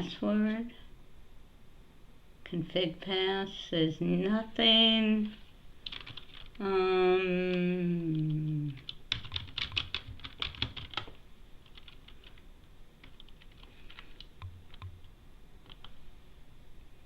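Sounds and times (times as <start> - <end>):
keyboard typing: 5.8 - 6.6, 8.1 - 12.4, 13.0 - 15.0, 15.6 - 16.0
falling vocal hum: 6.6 - 8.8.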